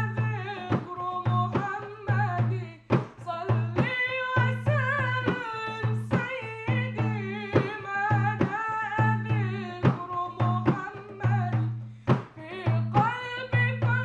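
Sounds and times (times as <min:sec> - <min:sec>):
person singing devotional song: 0:00.0 - 0:14.0
drum strokes: 0:02.8 - 0:14.0.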